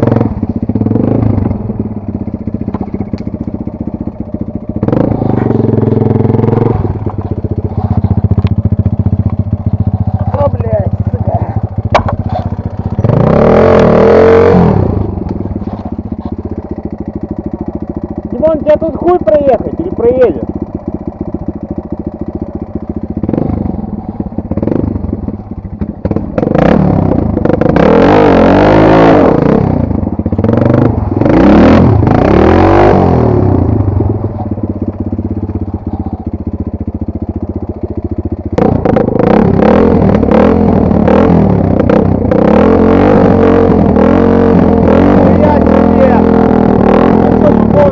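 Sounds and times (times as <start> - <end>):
motorcycle engine revving: 0.0 - 47.9
sharp knocks and clatter: 2.6 - 3.6, 11.8 - 13.1.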